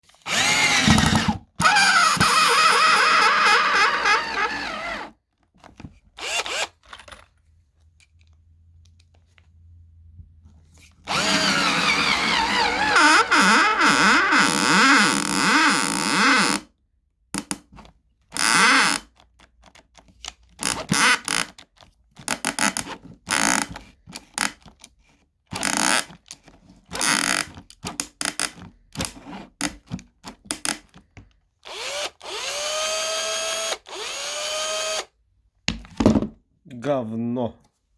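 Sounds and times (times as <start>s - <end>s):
cordless drill motor running: 0.2s - 5.1s, 6.2s - 6.7s, 11.1s - 16.6s, 31.7s - 35.1s.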